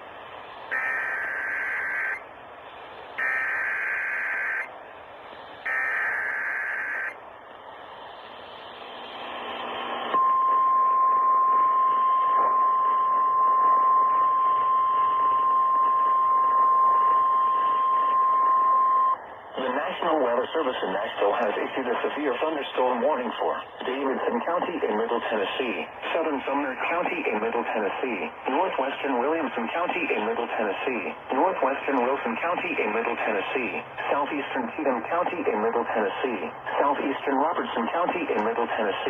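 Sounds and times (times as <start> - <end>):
radio static hiss: 0.0 - 10.2, 16.9 - 39.0
steady attention tone: 0.6 - 2.4, 3.0 - 4.7, 5.4 - 7.2, 10.1 - 19.3
data tone bursts: 0.7 - 2.2, 3.2 - 4.7, 5.7 - 7.2.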